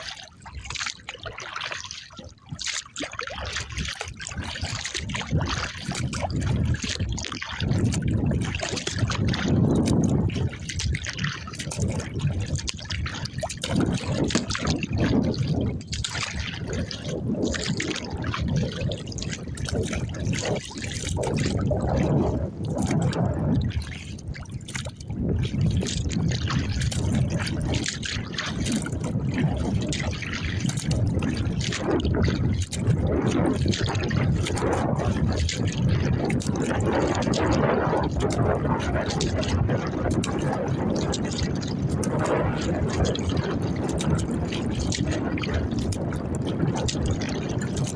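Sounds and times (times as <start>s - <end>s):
water sloshing and trickling: 0.0s - 47.9s
wind buffeting microphone: 3.4s - 47.9s.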